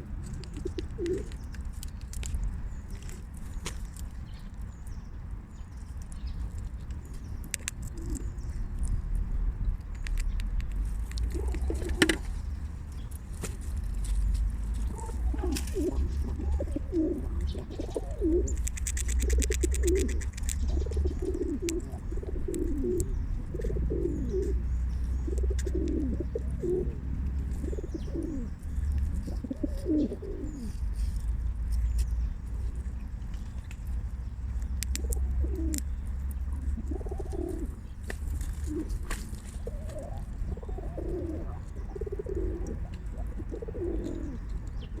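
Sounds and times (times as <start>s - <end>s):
pigeon cooing: 0.0s - 1.4s, 7.9s - 8.4s, 11.2s - 12.4s, 14.8s - 31.0s, 35.0s - 45.0s
sharp clicks: 6.9s - 8.2s, 9.7s - 12.3s, 18.4s - 23.7s.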